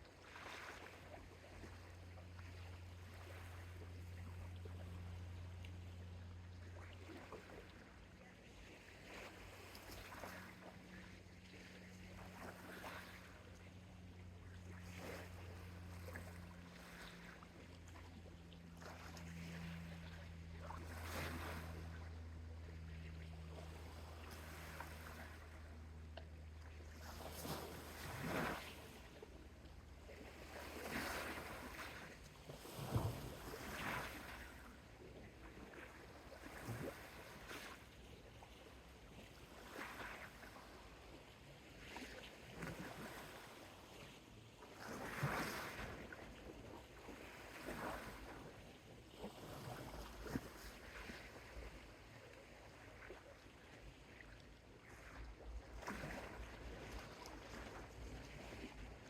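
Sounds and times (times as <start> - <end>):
low steady hum: 0.0 - 59.0
sea waves washing up a beach: 18.7 - 37.9, 44.7 - 48.6.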